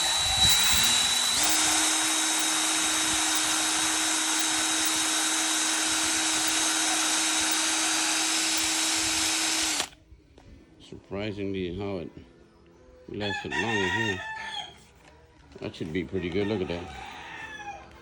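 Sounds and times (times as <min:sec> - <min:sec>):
electric grinder grinding metal: 0:00.0 - 0:09.9.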